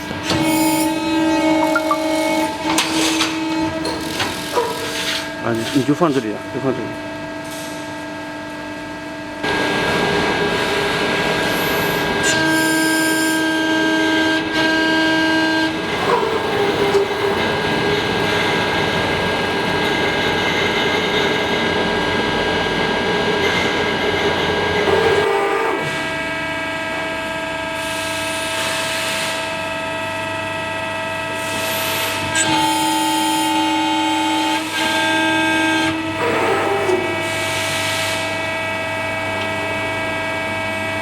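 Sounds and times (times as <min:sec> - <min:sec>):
machine whining tone: 0:00.0 - 0:06.2, 0:31.6 - 0:40.7
press brake machine noise: 0:00.0 - 0:06.4.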